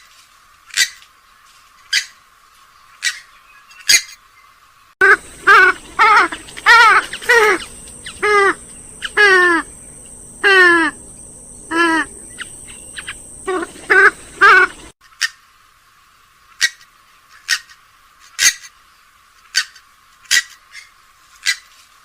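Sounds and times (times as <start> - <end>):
gallinule calling: 5.0 - 14.9.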